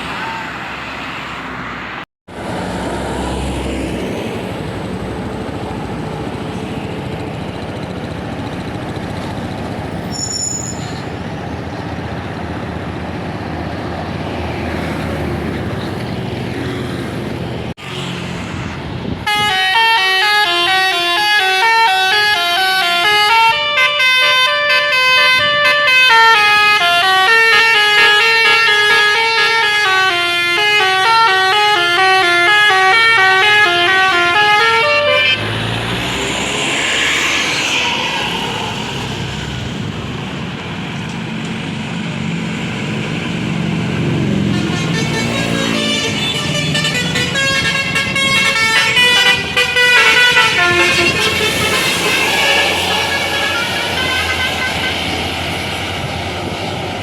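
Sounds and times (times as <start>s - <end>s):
bus engine and road noise: 0.0s - 57.0s
multi-tone bus horn melody: 19.2s - 35.7s, 44.2s - 55.4s.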